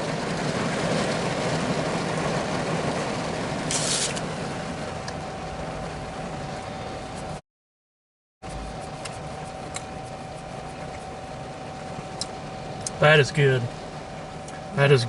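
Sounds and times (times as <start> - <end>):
faint steady hum: 3.7 - 7.4, 8.5 - 15.0.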